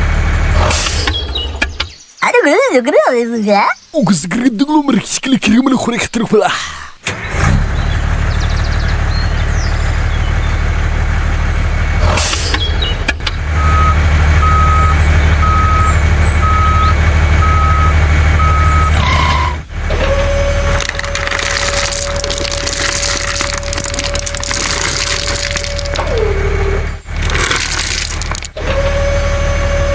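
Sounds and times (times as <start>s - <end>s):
truck engine running: 7.1s - 29.9s
reversing alarm beeps: 13.6s - 19.6s.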